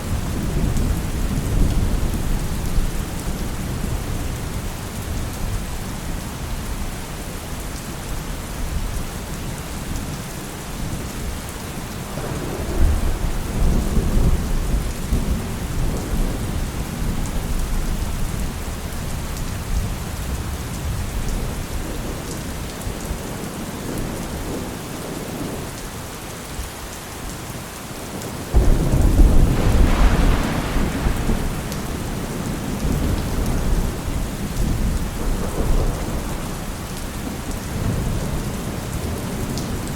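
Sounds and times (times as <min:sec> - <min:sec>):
heavy rain falling: 0:00.0 - 0:39.9
rolling thunder: 0:12.2 - 0:18.5, 0:28.5 - 0:39.9.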